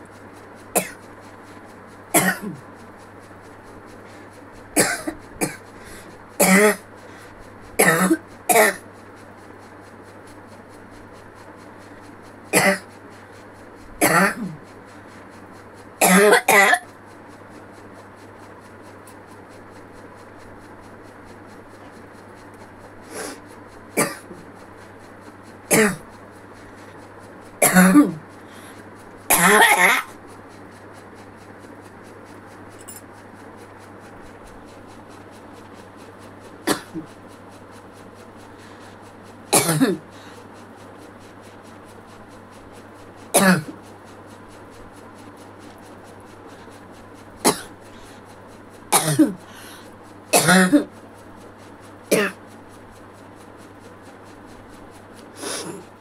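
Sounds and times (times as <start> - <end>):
steady low hum: 0.0 - 56.0
person coughing: 0.8 - 1.0, 2.2 - 2.6, 4.8 - 5.6, 6.4 - 6.8, 7.8 - 8.8, 12.6 - 12.9, 14.0 - 14.6, 16.0 - 16.8, 24.0 - 24.4, 25.7 - 26.0, 27.6 - 28.2, 29.3 - 30.1, 36.7 - 37.1, 39.6 - 40.0, 43.4 - 43.8, 47.5 - 47.7, 49.0 - 49.4, 50.4 - 50.9, 52.1 - 52.4.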